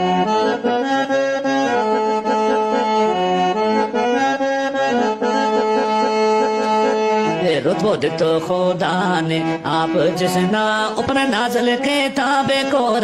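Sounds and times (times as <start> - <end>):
free-reed instrument melody: 0.0 - 13.0.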